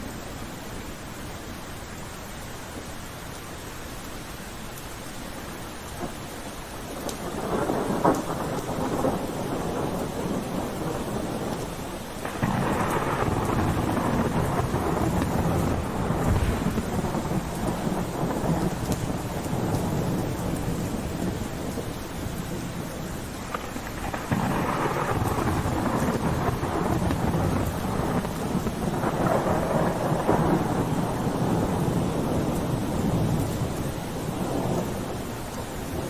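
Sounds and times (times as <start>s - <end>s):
steady rain: 0.0s - 36.0s
rolling thunder: 6.9s - 35.4s.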